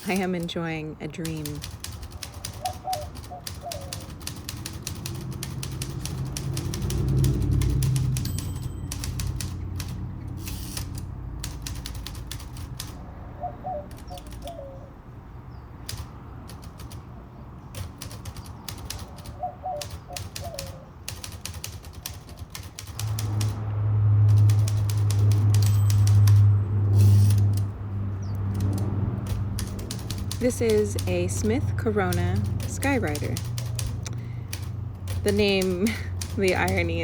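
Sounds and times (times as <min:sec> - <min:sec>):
typewriter key strikes: 0:24.3 - 0:26.5.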